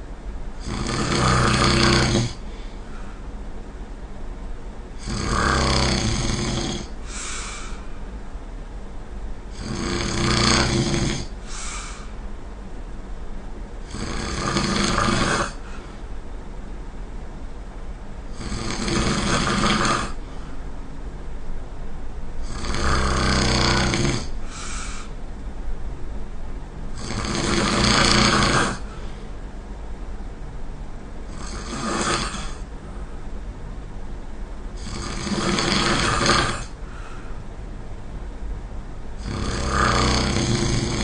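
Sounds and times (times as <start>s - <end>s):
person snoring: 0.6s - 2.4s, 5.0s - 7.9s, 9.5s - 12.2s, 13.8s - 16.0s, 18.3s - 20.2s, 22.4s - 25.2s, 27.0s - 29.1s, 31.3s - 32.7s, 34.8s - 37.3s, 39.2s - 41.0s.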